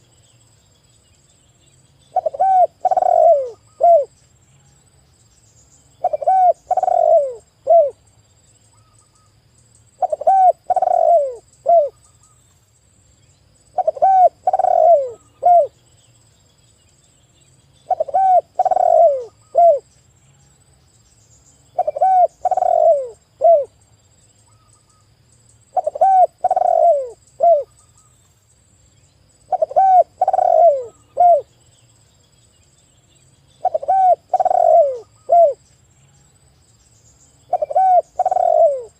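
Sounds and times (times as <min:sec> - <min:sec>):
dove cooing: 0:02.1 - 0:04.1, 0:06.0 - 0:08.0, 0:10.0 - 0:12.0, 0:13.7 - 0:15.8, 0:17.8 - 0:19.8, 0:21.8 - 0:23.8, 0:25.7 - 0:27.7, 0:29.5 - 0:31.5, 0:33.6 - 0:35.6, 0:37.5 - 0:38.9.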